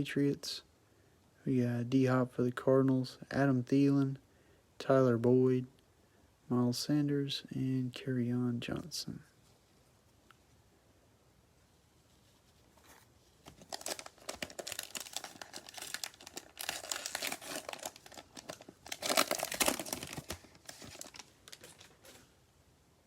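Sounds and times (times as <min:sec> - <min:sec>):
plastic wrapper tearing and crinkling: 0:13.4 - 0:22.2.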